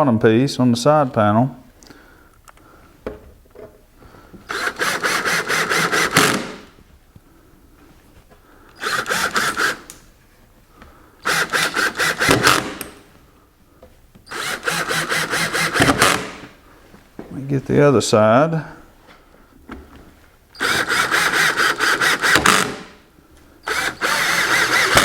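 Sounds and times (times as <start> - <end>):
power drill driving screws: 4.5 - 6.7, 8.8 - 10.0, 11.2 - 13.0, 14.3 - 16.6, 20.6 - 23.0, 23.6 - 25.0.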